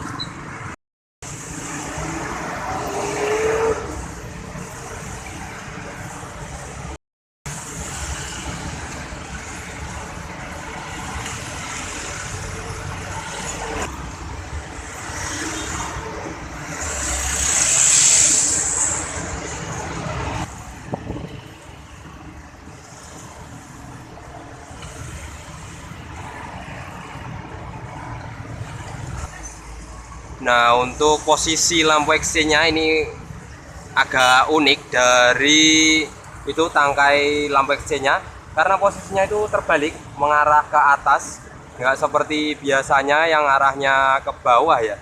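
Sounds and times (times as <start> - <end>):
cars and motorbikes passing: 0.0 - 45.0
loud vehicle passing with hiss: 1.2 - 6.9, 7.5 - 33.9.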